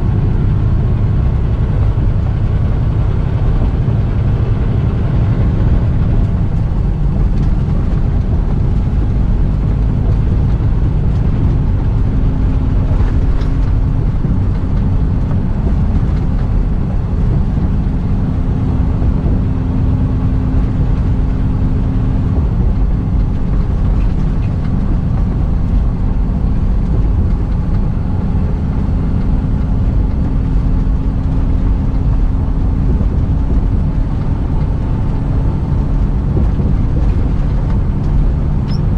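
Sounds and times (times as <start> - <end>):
road noise: 0.0 - 38.9
truck engine drone: 0.0 - 38.9.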